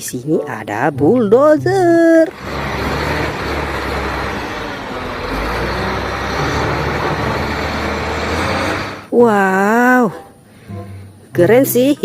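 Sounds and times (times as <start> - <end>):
heavy diesel engine rumbling: 2.2 - 9.3.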